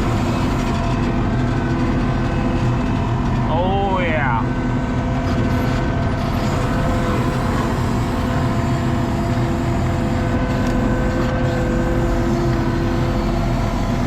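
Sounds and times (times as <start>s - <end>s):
hydraulic whine: 0.0s - 14.0s
track loader engine drone: 0.0s - 14.0s.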